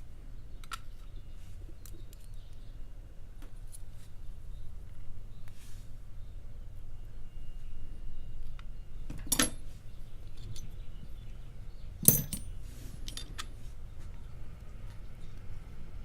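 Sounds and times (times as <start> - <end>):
metal clinks of padlock parts: 12.0 - 13.4.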